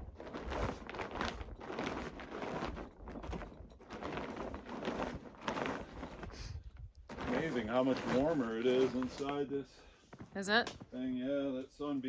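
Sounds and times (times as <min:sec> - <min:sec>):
footsteps crunching through snow: 0:00.0 - 0:09.6.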